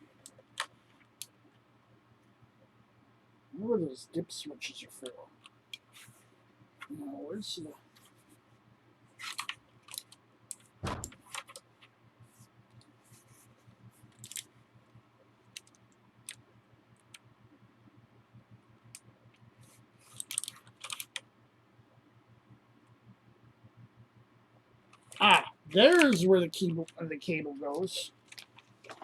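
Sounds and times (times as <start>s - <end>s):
mechanical keyboard clicks: 9.2s - 11.6s, 14.1s - 14.4s, 15.5s - 16.4s, 20.1s - 21.2s
heavy thump: 10.8s - 11.2s.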